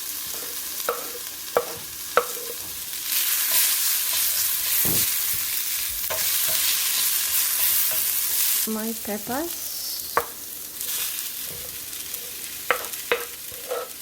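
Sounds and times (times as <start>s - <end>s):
onions sizzling in hot oil: 0.0s - 14.0s
utensil tapping a pan: 12.7s - 13.3s.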